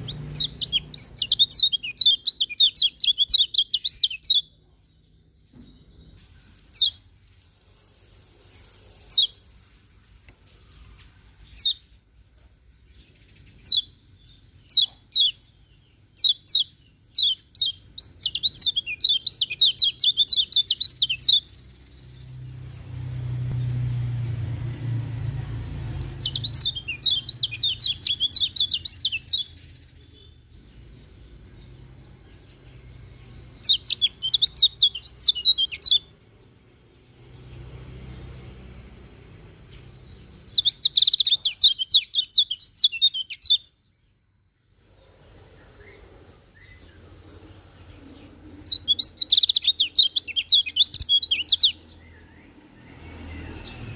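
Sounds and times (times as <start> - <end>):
bird chattering trills: 0.0 - 4.6, 16.2 - 21.6, 26.0 - 30.9, 33.4 - 36.1, 40.5 - 43.6, 47.9 - 51.9
sharp bird chirps: 0.0 - 7.1, 12.9 - 22.5, 25.8 - 36.2, 39.6 - 44.2, 48.2 - 53.9
low rumble: 22.3 - 26.8.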